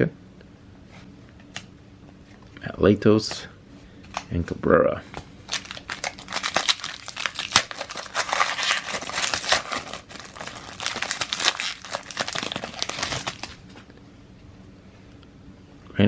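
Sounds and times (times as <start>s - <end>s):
foil wrapper crinkling and tearing: 5.5s - 13.7s.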